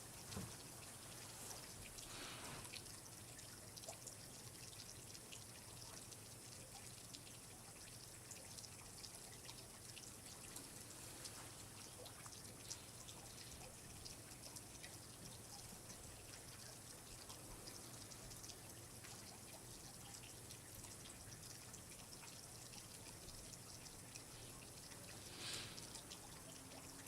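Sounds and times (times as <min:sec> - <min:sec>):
steady soft hiss: 0:00.0 - 0:03.6, 0:09.0 - 0:27.0
water dripping and trickling: 0:00.0 - 0:27.0.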